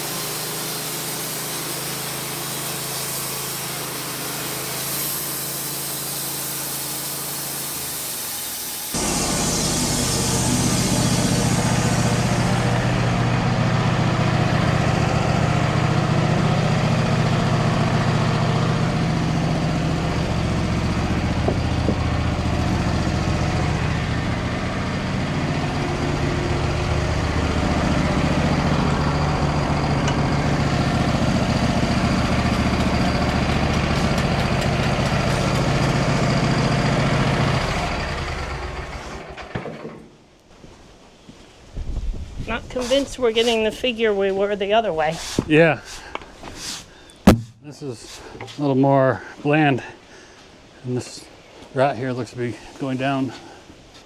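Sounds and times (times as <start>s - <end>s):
saw blade cutting hiss: 0.0s - 13.4s, 42.6s - 44.0s, 45.0s - 47.1s
sawmill engine running: 0.0s - 40.0s, 42.5s - 48.5s.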